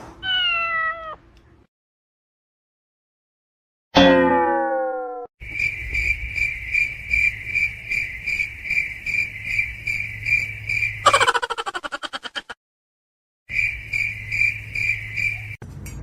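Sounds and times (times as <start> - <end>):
cat meowing: 0.2 - 1.2
cricket chirping: 5.4 - 12.4, 13.5 - 15.6.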